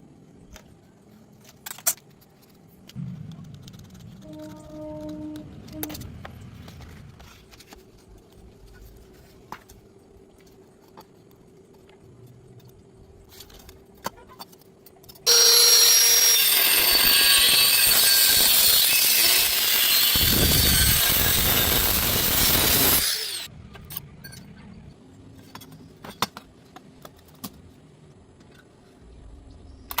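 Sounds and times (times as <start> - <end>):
power tool cutting metal pipe: 15.3 - 23.5.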